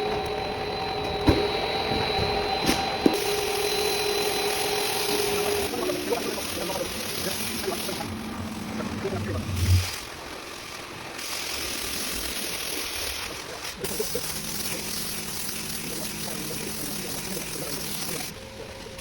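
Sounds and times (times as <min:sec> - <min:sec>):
water running: 0:03.1 - 0:18.3.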